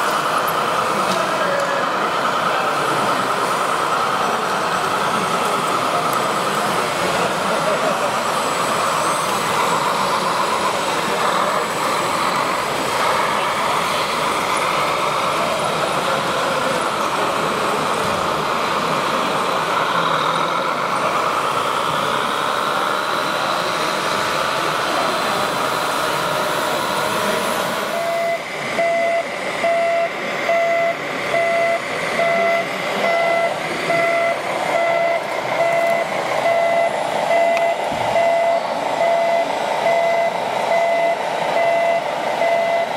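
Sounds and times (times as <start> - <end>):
model truck motor whine: 0.0 - 42.9
reversing beeper: 7.0 - 12.6, 26.7 - 42.9.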